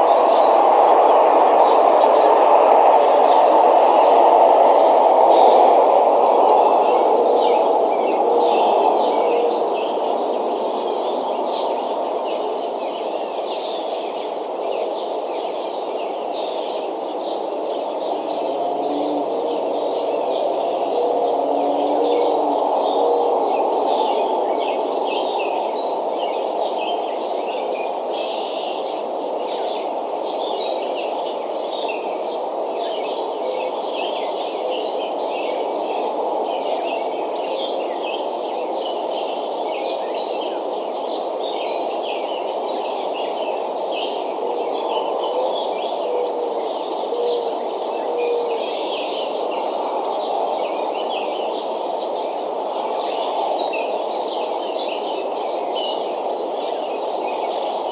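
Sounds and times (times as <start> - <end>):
steady rushing noise: 0.0 - 13.0.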